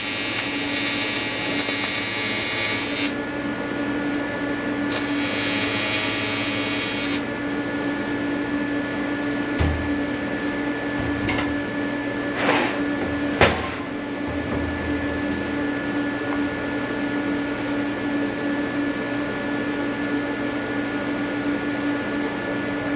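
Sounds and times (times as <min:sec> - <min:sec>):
welding arc buzzing: 0:00.0 - 0:03.2, 0:04.9 - 0:07.3
steady electrical hum: 0:00.0 - 0:22.1.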